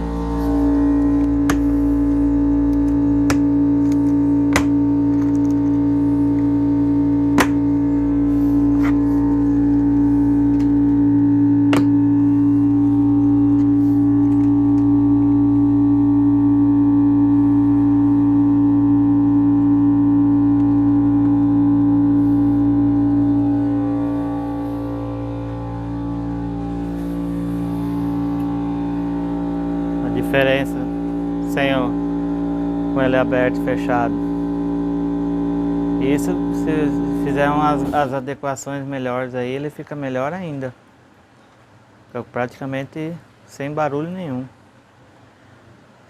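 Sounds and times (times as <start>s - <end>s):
air compressor running: 0.0s - 39.7s
sharp knocks: 4.5s - 4.8s, 7.4s - 7.6s.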